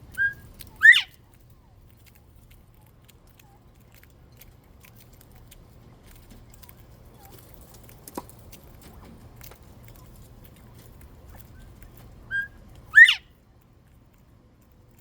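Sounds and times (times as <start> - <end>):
quail peeping: 0.0 - 1.8, 9.8 - 13.4.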